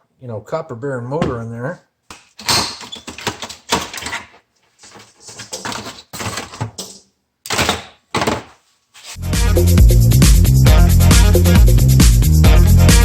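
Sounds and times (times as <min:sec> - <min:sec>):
plastic and metal parts rattling: 0:02.2 - 0:08.6.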